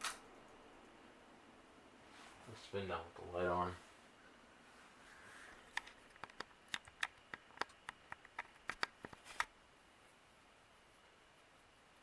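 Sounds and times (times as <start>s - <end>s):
ceiling fan clicking: 0.0s - 1.0s, 5.6s - 9.6s
faint steady noise: 0.0s - 12.0s.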